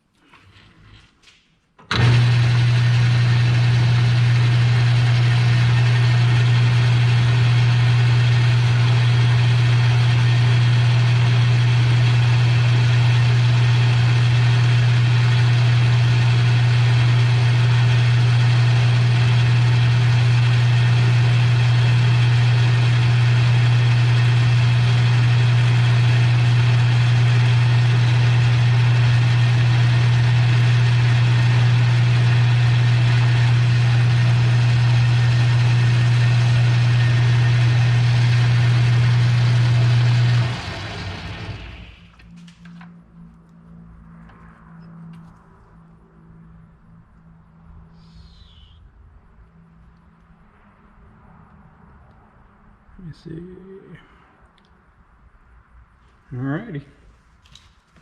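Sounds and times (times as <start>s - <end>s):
metal lathe turning cut: 1.9s - 42.0s
motor hum: 1.9s - 42.9s.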